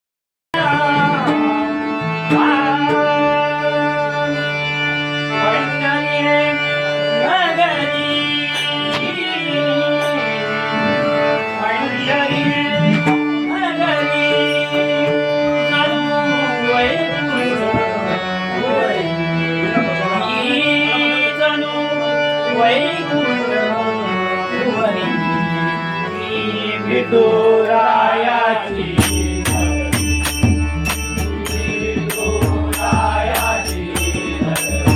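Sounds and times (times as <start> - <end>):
harmonium accompaniment: 0.6 - 34.9
man singing long melodic notes: 0.6 - 34.9
steady drone: 28.1 - 34.9
sharp percussion strokes: 29.0 - 34.9.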